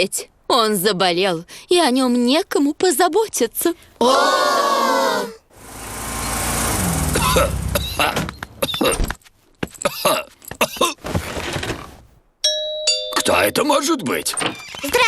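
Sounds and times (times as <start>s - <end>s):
cartoon car pulling up: 5.5s - 9.0s
cartoon bear coughing: 7.1s - 9.1s, 9.8s - 11.0s.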